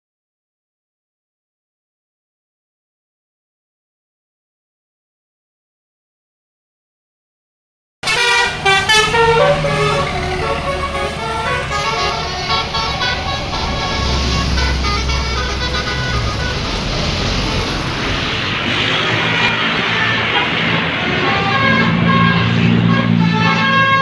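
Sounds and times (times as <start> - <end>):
bus engine rumble: 8.0 - 24.0
bus horn playing a melody: 8.0 - 24.0.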